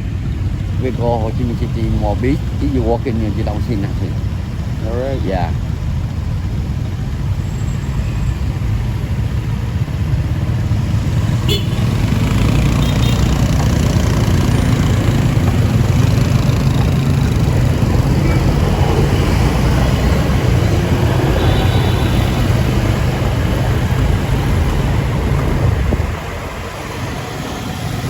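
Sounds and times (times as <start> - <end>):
motorcycle engine running: 0.0 - 28.0
wind rushing over microphone: 14.0 - 28.0.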